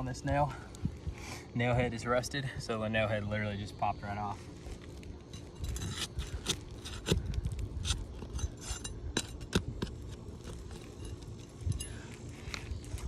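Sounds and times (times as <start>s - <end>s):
pry bar scraping on shingles: 5.3s - 13.0s.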